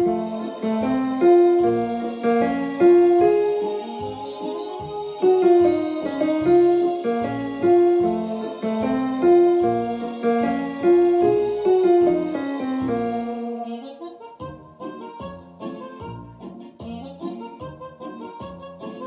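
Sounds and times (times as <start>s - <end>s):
slow piano melody: 0.0s - 13.9s.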